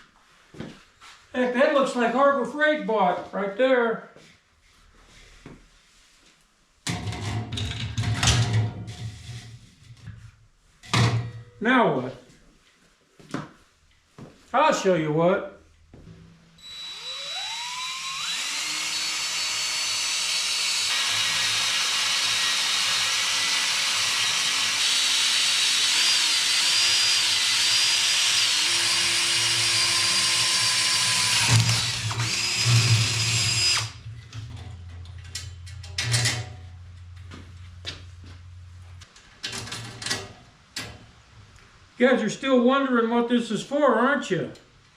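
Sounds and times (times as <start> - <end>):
power tool motor whining: 16.6 - 34.0.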